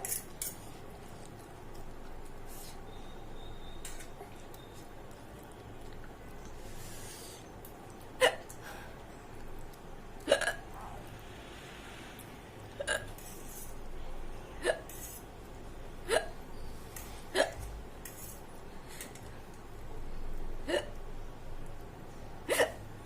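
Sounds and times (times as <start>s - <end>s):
woman hiccupping: 10.2s - 10.7s, 12.8s - 13.1s, 16.1s - 16.4s, 17.3s - 17.6s, 20.6s - 21.0s.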